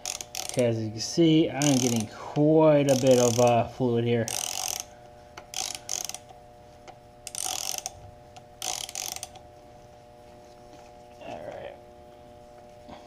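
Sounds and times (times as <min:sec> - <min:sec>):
hand ratchet clicking: 0:00.0 - 0:06.4, 0:07.2 - 0:09.5.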